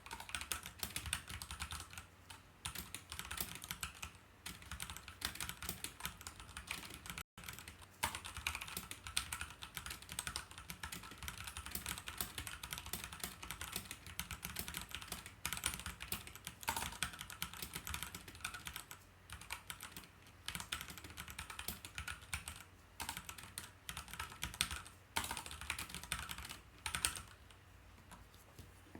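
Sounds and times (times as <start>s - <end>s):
fast mechanical keyboard typing: 0.0s - 27.5s.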